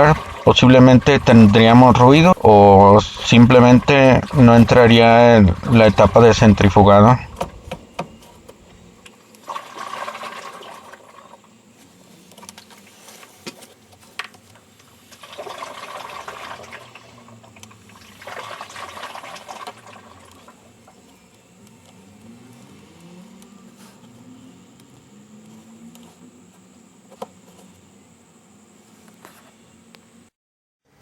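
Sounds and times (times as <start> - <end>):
water swishing in washing machine: 0.0 - 12.2, 14.9 - 21.3
faint rising hums: 0.0 - 13.2, 15.0 - 30.3.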